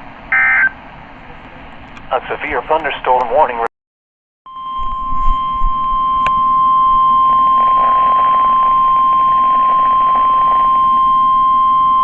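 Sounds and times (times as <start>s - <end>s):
steady warning alarm beep: 0.3s - 0.8s, 4.5s - 12.0s.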